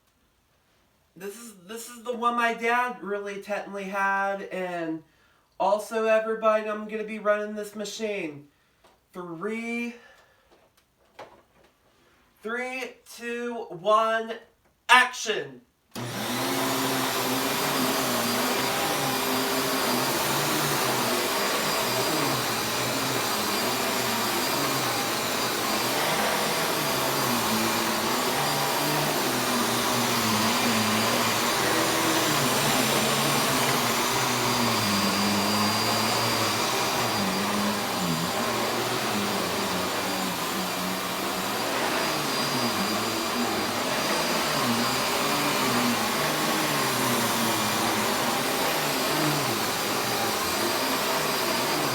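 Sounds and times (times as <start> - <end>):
vacuum cleaner running: 16.0 - 51.9.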